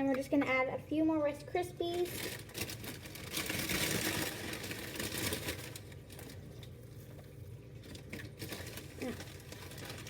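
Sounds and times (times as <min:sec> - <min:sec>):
cereal bag crinkling: 0:01.9 - 0:06.8, 0:07.8 - 0:10.0.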